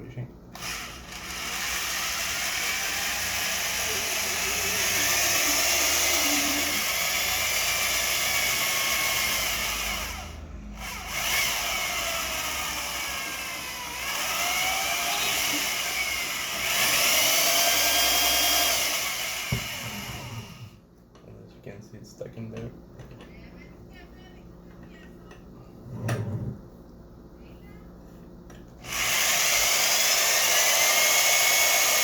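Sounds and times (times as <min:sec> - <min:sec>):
rotary power tool whine: 0:00.5 - 0:20.8, 0:28.8 - 0:32.0.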